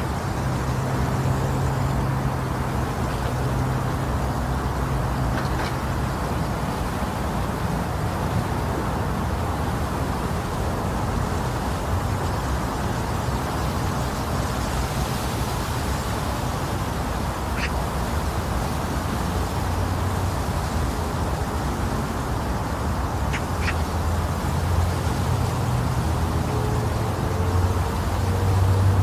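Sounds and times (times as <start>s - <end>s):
low white noise rumble: 0.0s - 29.0s.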